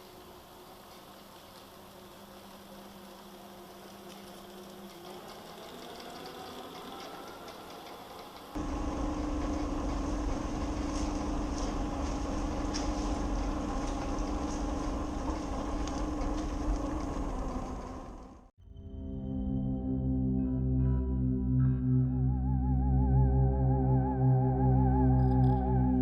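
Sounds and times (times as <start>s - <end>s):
electric motor whining: 0.0s - 18.5s.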